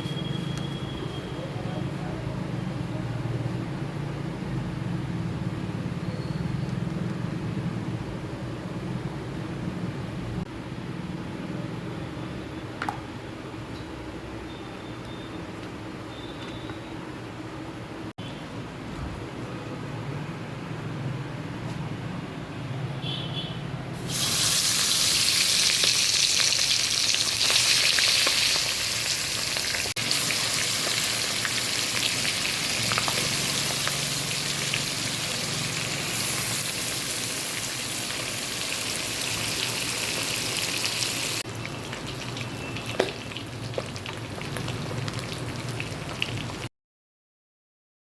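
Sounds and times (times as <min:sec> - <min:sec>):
fish frying in hot oil: 0:24.0 - 0:46.7.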